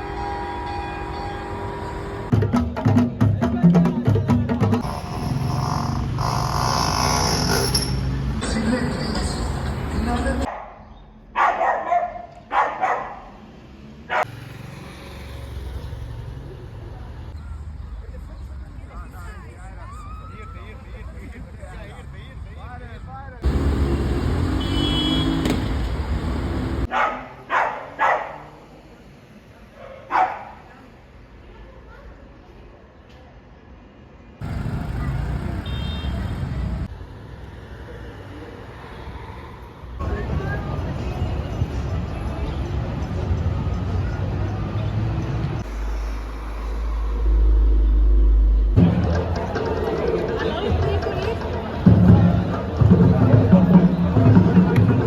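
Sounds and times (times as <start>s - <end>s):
steady traffic noise: 0.0s - 2.4s, 4.8s - 55.0s
vehicle engine and road rumble: 4.8s - 10.6s, 11.4s - 31.1s, 34.4s - 38.8s, 39.4s - 55.0s
dog barking: 10.5s - 13.4s, 14.1s - 14.3s, 26.9s - 28.5s, 29.8s - 30.7s.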